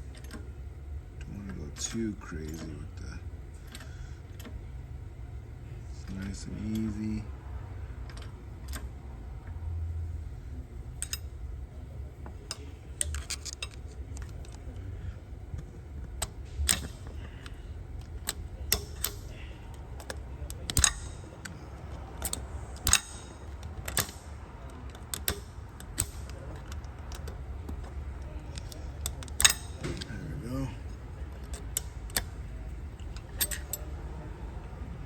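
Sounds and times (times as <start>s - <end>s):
low steady hum: 0.0s - 35.0s
metallic clicks and clinks: 10.9s - 11.4s, 12.2s - 34.8s.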